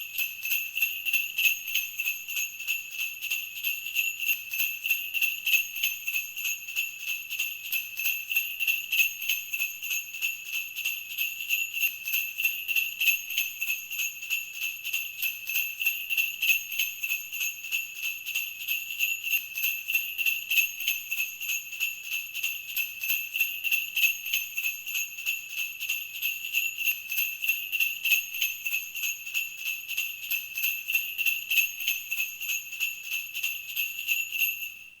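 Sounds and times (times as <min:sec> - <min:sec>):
sleigh bells jingling: 0:13.3 - 0:35.0.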